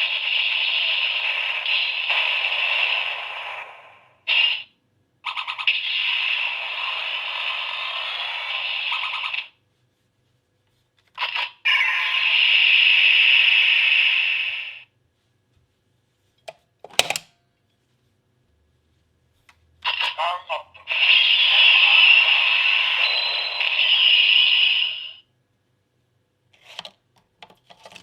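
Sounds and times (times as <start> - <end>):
toy belt electronic buzzing: 20.9 - 25.2.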